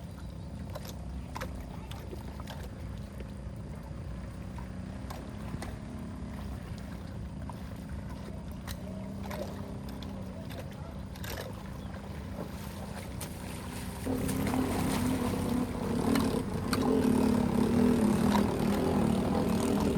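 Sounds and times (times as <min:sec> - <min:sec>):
water rushing: 0:00.0 - 0:19.9
small splashes and clicks: 0:00.5 - 0:03.4, 0:04.4 - 0:17.1.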